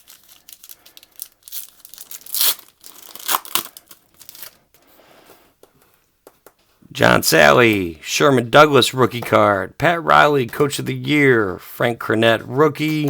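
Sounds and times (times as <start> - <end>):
wax paper wrapper tearing: 0.0 - 4.6.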